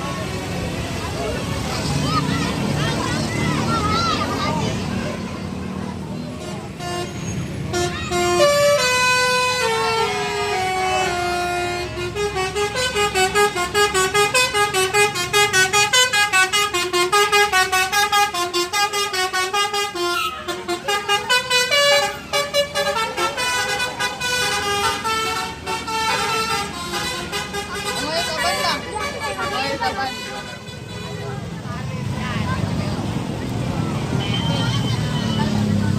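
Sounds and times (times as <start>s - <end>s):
bus musical horn melody: 6.4s - 31.3s.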